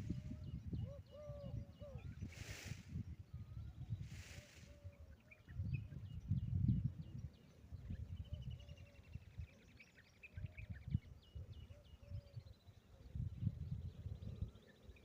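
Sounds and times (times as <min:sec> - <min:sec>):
birds chirping and trilling: 0:00.0 - 0:15.0.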